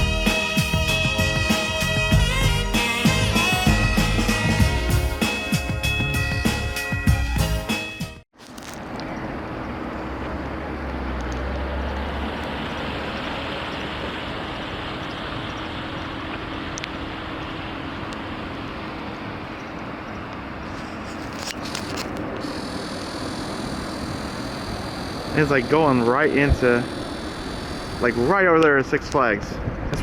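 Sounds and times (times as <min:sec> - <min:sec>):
faint steady hum: 0:21.9 - 0:28.6.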